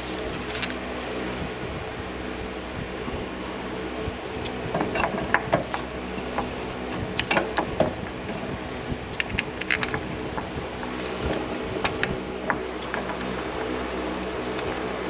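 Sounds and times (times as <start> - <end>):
hand tools clinking on metal: 0.0 - 1.0
steady background hum: 0.0 - 15.0.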